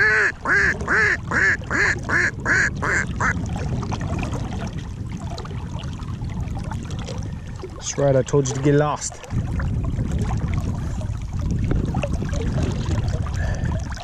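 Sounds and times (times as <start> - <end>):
duck quacking: 0.0 - 3.3.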